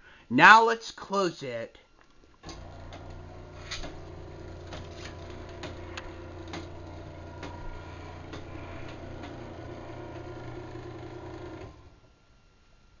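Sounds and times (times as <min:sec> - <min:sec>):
garage door opener motor hum: 0:02.1 - 0:12.3.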